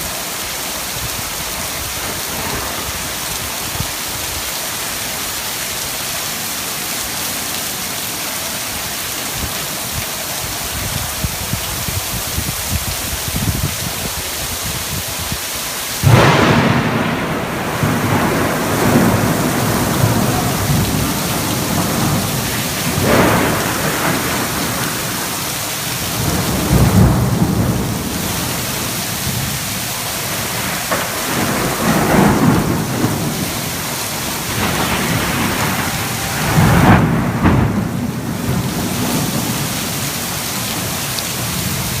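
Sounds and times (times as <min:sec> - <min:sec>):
steady rain: 0:00.0 - 0:42.0
thunder rumbling: 0:01.9 - 0:04.1, 0:16.0 - 0:42.0.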